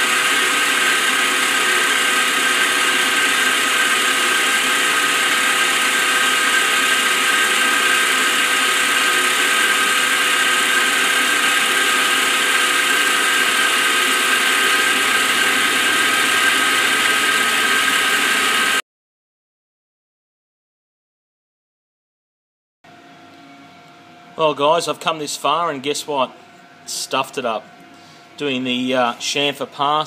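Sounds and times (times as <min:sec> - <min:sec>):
milling machine cutting metal: 0:00.0 - 0:18.8.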